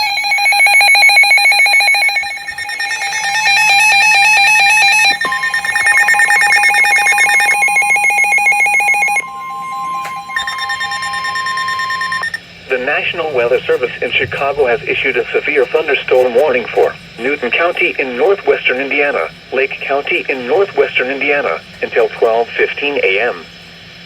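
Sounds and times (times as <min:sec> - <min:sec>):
warbling electronic alarm beeps: 0:00.0 - 0:23.4
steady alert tone: 0:00.6 - 0:16.9.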